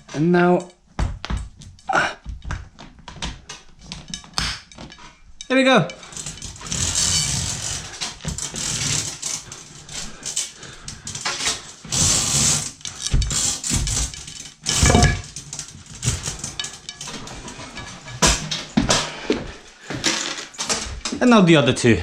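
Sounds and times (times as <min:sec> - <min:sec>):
clicks and knocks: 0:00.6 - 0:19.2
scraping and rustling: 0:05.9 - 0:21.1.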